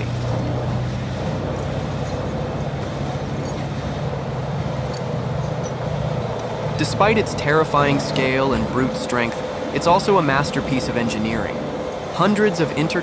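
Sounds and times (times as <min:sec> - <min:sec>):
heavy machinery rumble and hum: 0:00.0 - 0:13.0.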